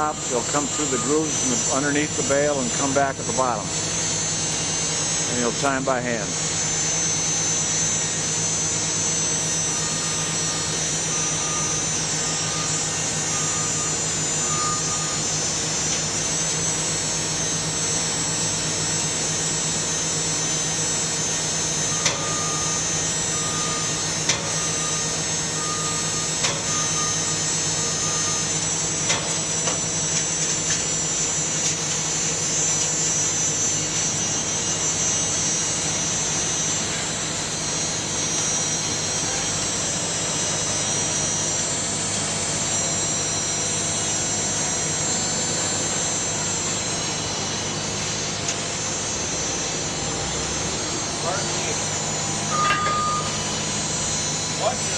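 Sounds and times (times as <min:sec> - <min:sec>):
high whine: 0:00.0 - 0:54.9
machinery drone: 0:00.0 - 0:54.9
short high beeping: 0:52.4 - 0:53.6.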